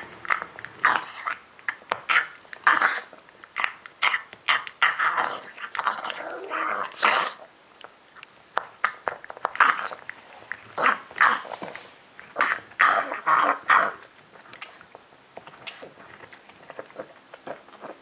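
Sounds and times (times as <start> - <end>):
dog eating noisily: 0.0 - 18.0.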